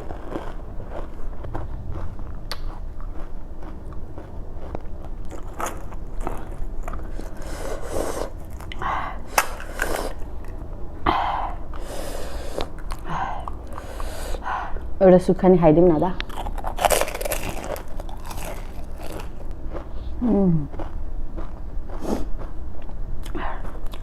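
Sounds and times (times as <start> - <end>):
chewing crunchy food: 0.0 - 10.7, 11.7 - 14.4, 16.2 - 24.0
wet mouth noises: 1.3 - 4.0.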